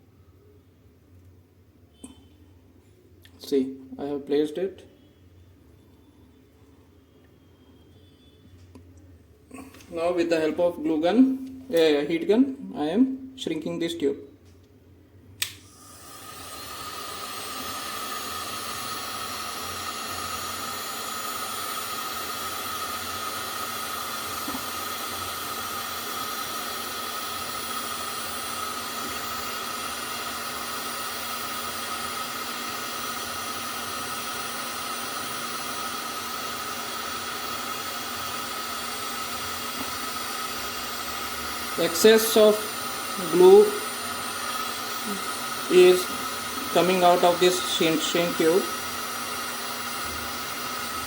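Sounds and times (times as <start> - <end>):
heat gun blowing hot air: 15.4 - 51.0.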